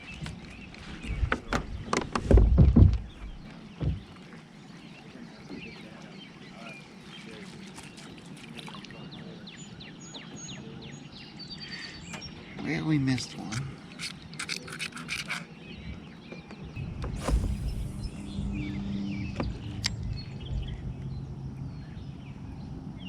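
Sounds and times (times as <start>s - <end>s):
knocks and thumps on a kayak: 1.0s - 4.3s.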